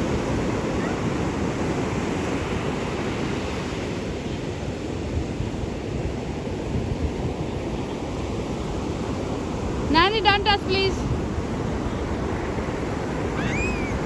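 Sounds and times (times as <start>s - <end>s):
wind on microphone: 0.0s - 14.0s
surf breaking on beach: 6.8s - 14.0s.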